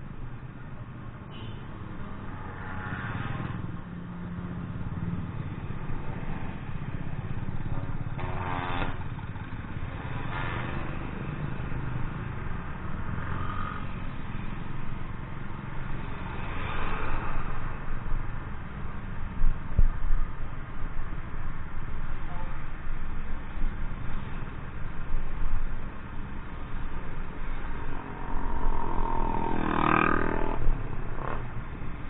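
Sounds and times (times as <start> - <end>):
motorcycle engine running: 27.4 - 32.0.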